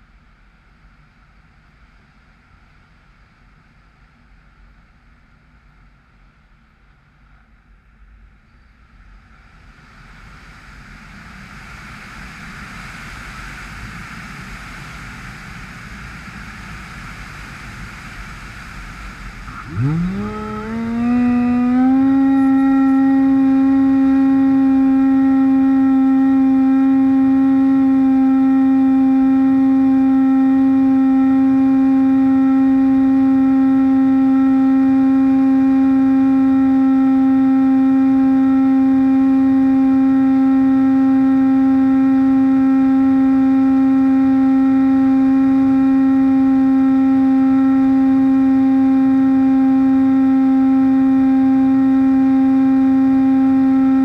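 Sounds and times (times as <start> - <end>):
electric motor propeller drone: 19.3 - 54.0.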